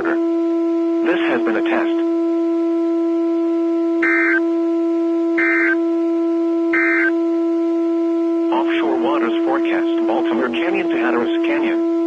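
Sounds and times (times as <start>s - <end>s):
low buzzing radio tone: 0.0s - 12.0s
digital data bursts: 4.0s - 4.4s, 5.4s - 5.8s, 6.8s - 7.1s.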